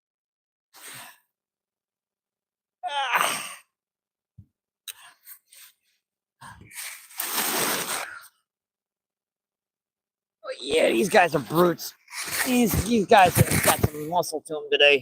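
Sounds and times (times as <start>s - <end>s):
man straining exclamation: 2.8s - 3.4s.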